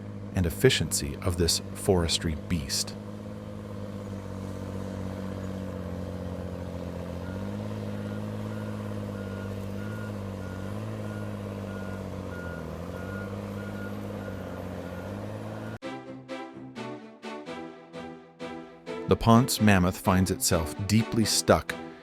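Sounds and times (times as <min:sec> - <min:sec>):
diesel engine running: 0:00.0 - 0:15.8
backup alarm beeping: 0:07.2 - 0:15.8.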